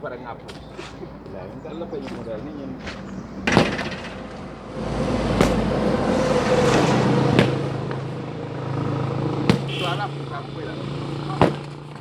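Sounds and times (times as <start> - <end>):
demolition machine engine rumble: 0.0 - 12.0
sharp crashing knocks: 2.1 - 10.2.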